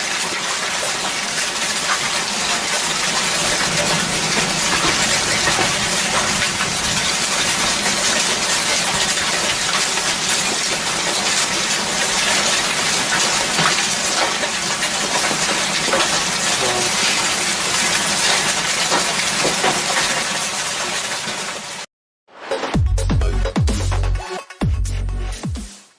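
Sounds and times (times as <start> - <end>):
hailstones pelting hard surfaces: 0.0 - 21.8
heavy rain: 0.0 - 21.9
electronic music: 22.4 - 25.9.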